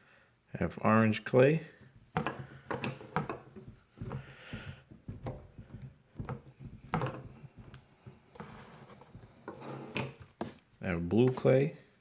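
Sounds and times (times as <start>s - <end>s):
plastic rubbing scrape: 1.8s - 10.7s
plastic toys clicking and tapping: 2.1s - 7.8s.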